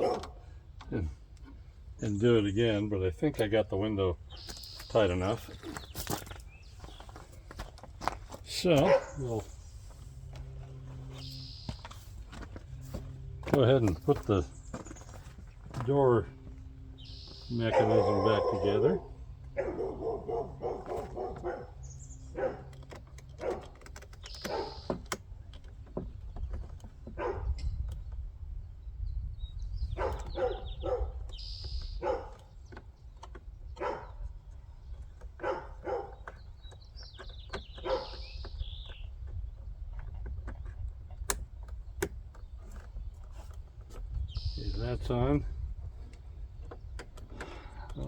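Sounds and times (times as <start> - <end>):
dog barking and yipping: 0.0 - 0.4, 8.8 - 9.3, 17.6 - 22.7, 23.3 - 23.8, 24.4 - 24.8, 27.2 - 27.5, 30.0 - 31.2, 32.0 - 32.4, 33.8 - 34.1, 35.4 - 36.2, 37.8 - 38.2
low steady rumble: 0.0 - 36.6.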